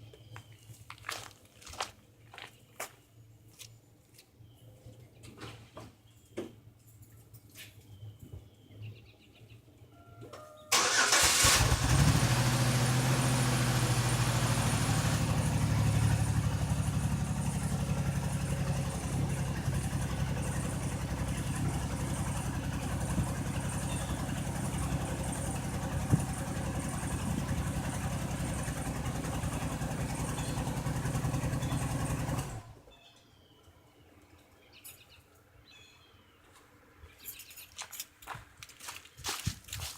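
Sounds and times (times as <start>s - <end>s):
car engine misfiring at idle: 10.7s - 32.7s.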